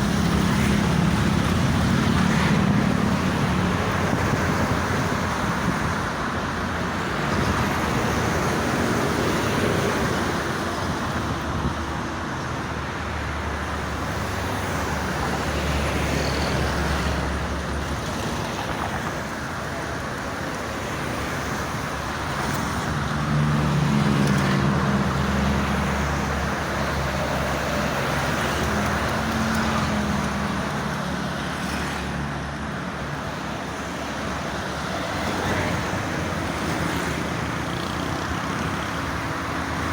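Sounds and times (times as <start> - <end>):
road traffic noise: 0.0 - 39.9.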